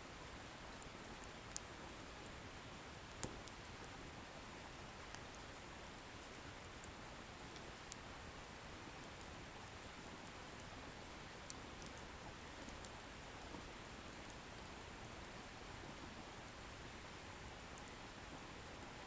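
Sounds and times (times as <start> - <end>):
wood fire crackling: 2.7 - 18.9.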